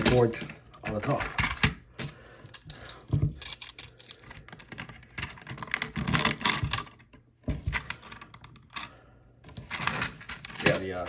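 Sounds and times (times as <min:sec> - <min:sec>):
plastic toy clicking and rattling: 0:02.5 - 0:07.1.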